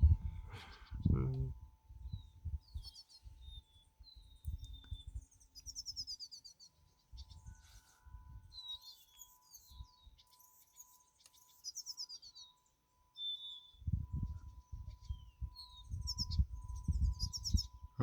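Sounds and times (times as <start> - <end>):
songbirds chirping: 0.0 - 18.0
thin whistled bird notes: 2.1 - 17.8.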